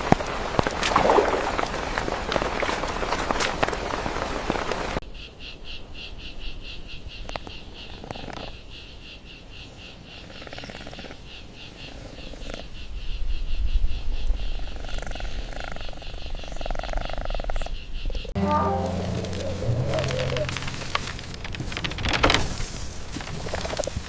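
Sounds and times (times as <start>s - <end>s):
low steady tones: 18.4s - 21.8s
low rumble: 18.4s - 22.3s.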